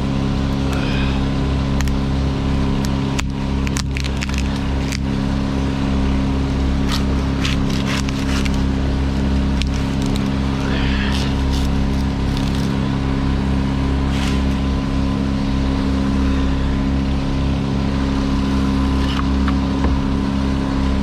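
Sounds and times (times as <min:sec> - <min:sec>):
heavy engine running: 0:00.0 - 0:21.0
wood cracking and snapping: 0:02.8 - 0:05.1, 0:06.8 - 0:12.8.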